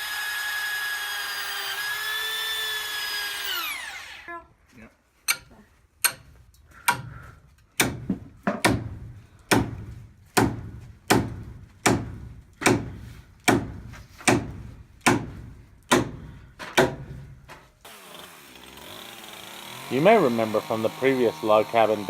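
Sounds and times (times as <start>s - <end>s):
hammer blows on a log: 7.8s - 16.2s.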